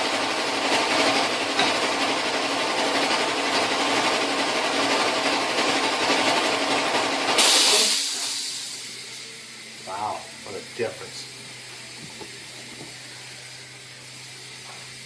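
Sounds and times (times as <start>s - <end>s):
loud hiss: 7.4s - 11.4s.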